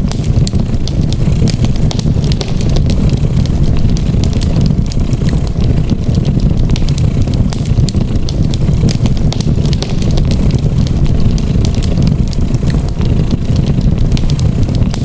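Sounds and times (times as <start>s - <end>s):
cat purring: 0.0s - 15.0s
wood fire crackling and popping: 0.0s - 15.0s.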